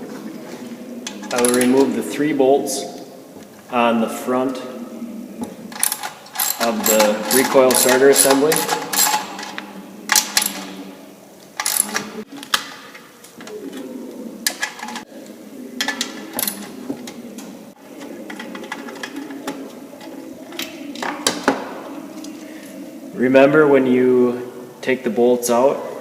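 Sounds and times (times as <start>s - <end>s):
socket ratchet clicking: 5.8s - 7.9s, 11.6s - 12.0s
metal clinks of tools and bolts: 5.8s - 9.5s.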